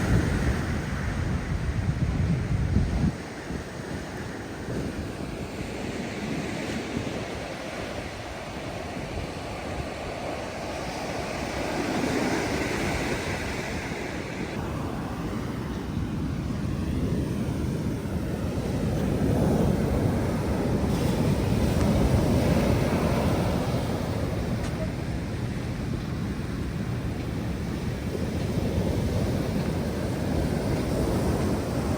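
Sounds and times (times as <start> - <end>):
surf breaking on a beach: 0.0 - 31.9
wind rumbling on microphone: 0.0 - 31.9.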